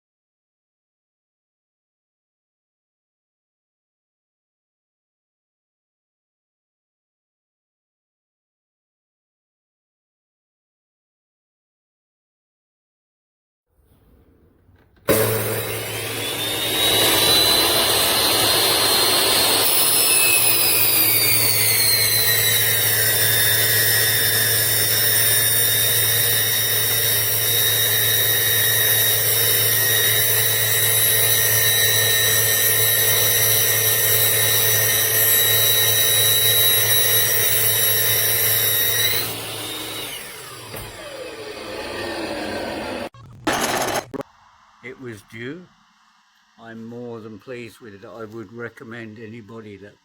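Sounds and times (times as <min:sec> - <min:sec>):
miter saw motor whine: 0:15.1 - 0:44.8.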